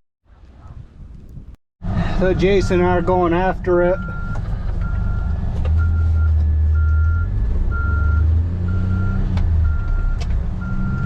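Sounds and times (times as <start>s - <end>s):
engine running: 1.8s - 11.0s
backup alarm beeping: 2.6s - 11.0s.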